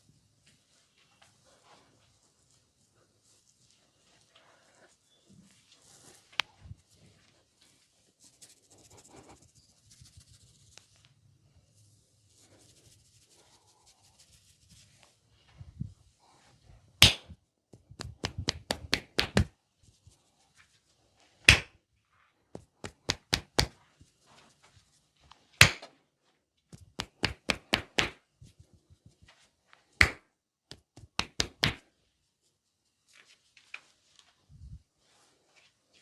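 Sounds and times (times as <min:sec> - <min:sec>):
hands slapping and chopping: 0:17.0 - 0:19.5, 0:21.5 - 0:21.8, 0:22.6 - 0:23.8, 0:25.6 - 0:25.9, 0:26.7 - 0:28.2, 0:30.0 - 0:31.8.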